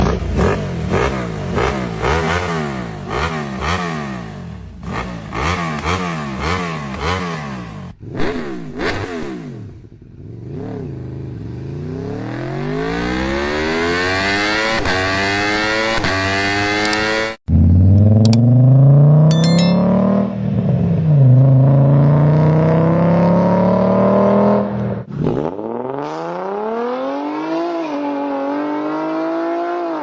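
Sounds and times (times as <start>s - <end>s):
engines revving: 10.4s - 18.7s.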